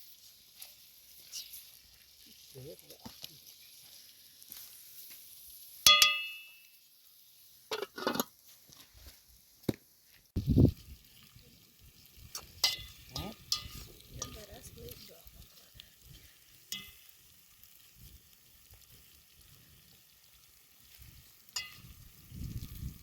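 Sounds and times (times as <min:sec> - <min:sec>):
food sizzling in pan: 0:00.0 - 0:23.0
utensil clinking against pan: 0:05.9 - 0:06.6, 0:12.6 - 0:14.5, 0:16.7 - 0:17.0, 0:21.6 - 0:21.9.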